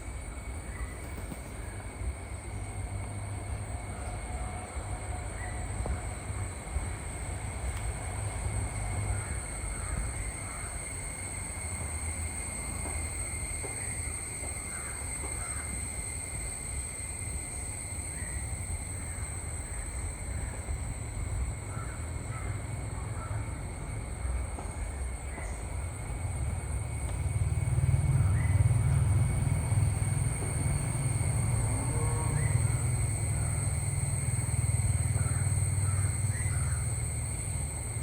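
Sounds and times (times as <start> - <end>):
crows cawing: 9.1 - 10.8, 14.7 - 15.7, 21.7 - 22.6, 35.2 - 36.8.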